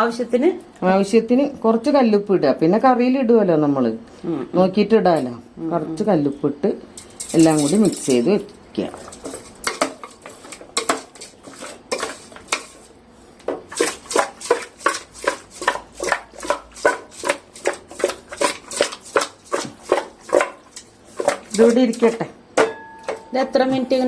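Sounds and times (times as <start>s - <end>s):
food mixing in a metal bowl: 6.9s - 22.4s.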